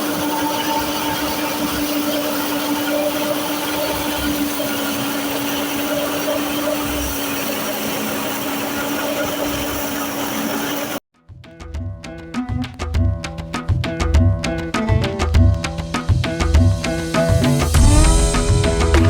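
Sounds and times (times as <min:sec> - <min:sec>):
threshing machine running: 0:00.0 - 0:11.0, 0:17.6 - 0:19.0
drum-led music: 0:11.2 - 0:19.0.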